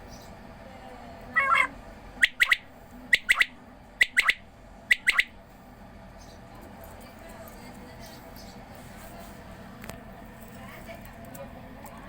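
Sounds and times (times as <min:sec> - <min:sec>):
quail calling: 0:01.3 - 0:05.4.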